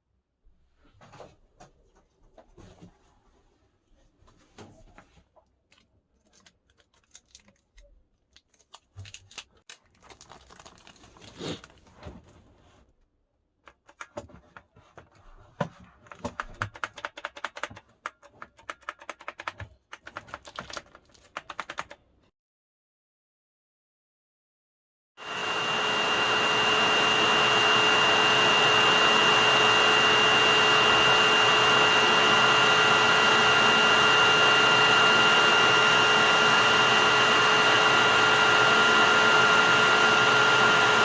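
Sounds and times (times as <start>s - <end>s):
handling clicks and crinkling: 4.9s - 12.4s, 16.0s - 22.0s.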